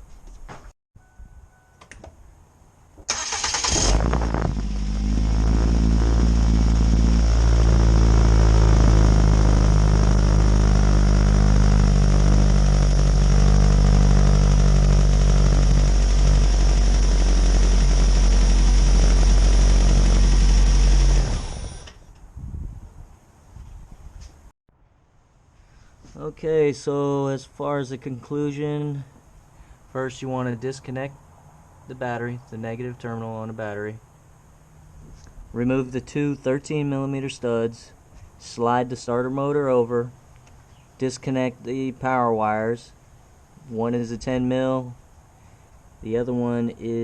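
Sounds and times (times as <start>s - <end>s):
starter cranking engine: 3.1s - 22.0s
car engine idling: 3.2s - 21.9s.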